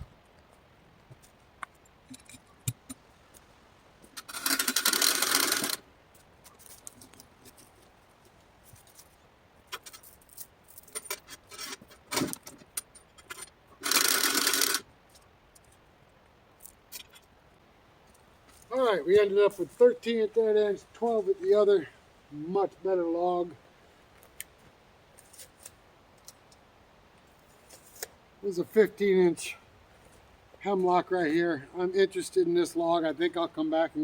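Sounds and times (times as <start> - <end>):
metal tape measure whirring: 4.2 - 5.8, 13.2 - 14.8.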